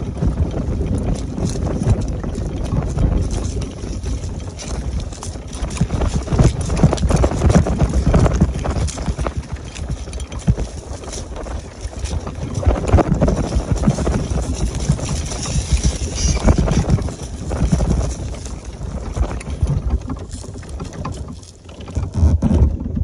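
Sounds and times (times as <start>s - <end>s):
power wheelchair rumbling: 0.0s - 23.0s
wheelchair knocks and rattles: 0.0s - 23.0s.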